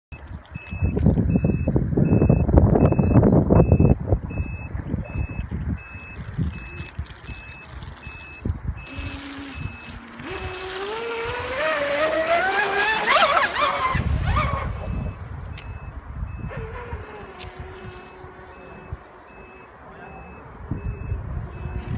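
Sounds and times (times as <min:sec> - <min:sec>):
electronic beeps: 0:00.1 - 0:10.5, 0:14.6 - 0:21.9
wind on microphone: 0:00.1 - 0:19.1, 0:20.4 - 0:21.9
electric motor whining: 0:05.9 - 0:15.2.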